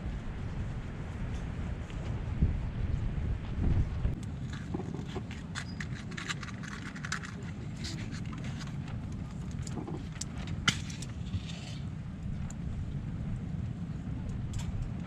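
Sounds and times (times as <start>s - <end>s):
low rumble of wind: 0.0s - 15.0s
camping gear clicks and rattles: 4.1s - 11.9s.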